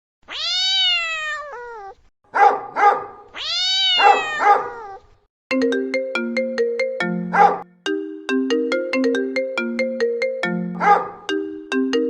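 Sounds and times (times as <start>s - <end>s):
cat meowing: 0.2s - 2.1s, 3.3s - 5.2s.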